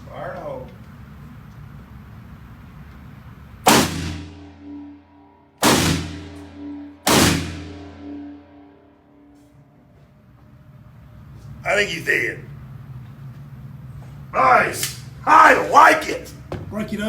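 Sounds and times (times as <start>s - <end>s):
gunshots: 3.7s - 4.7s, 5.6s - 8.3s
ringing tone: 4.4s - 5.5s, 6.2s - 9.5s.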